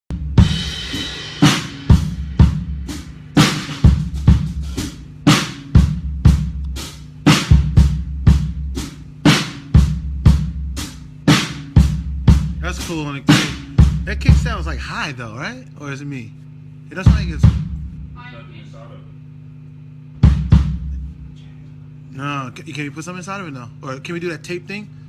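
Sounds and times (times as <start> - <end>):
drum kit groove: 0.1 - 15.1, 16.5 - 18.3, 19.4 - 21.4.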